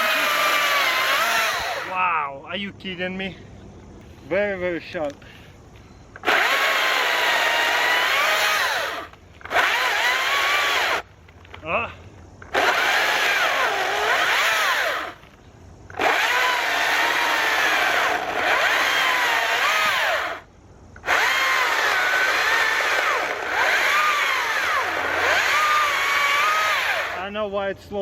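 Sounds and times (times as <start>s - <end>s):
electric chainsaw cutting log: 0.0s - 2.0s, 6.2s - 11.0s, 12.5s - 15.2s, 15.9s - 20.4s, 21.0s - 27.2s.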